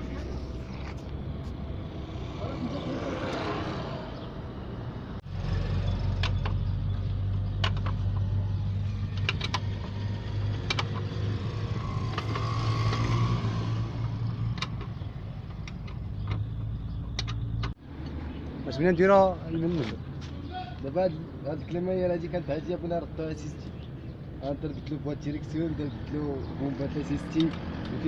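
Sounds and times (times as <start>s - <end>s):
engine humming: 0.0s - 20.6s
sharp metallic clicks: 8.9s - 11.3s, 14.0s - 18.6s, 27.2s - 28.0s.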